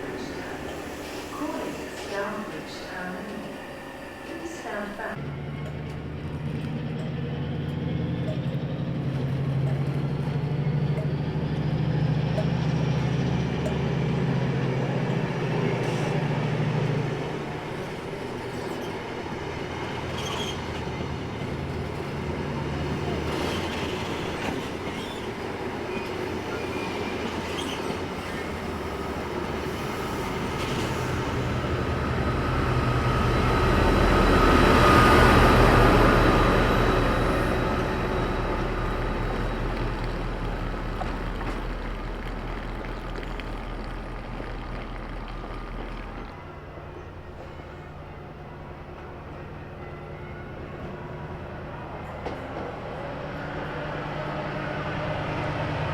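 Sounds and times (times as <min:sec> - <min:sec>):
diesel engine humming: 0:00.0 - 0:18.5, 0:28.0 - 0:48.9
passenger train passing: 0:00.0 - 0:55.9
train wheel squeal: 0:17.7 - 0:22.2, 0:22.9 - 0:41.1.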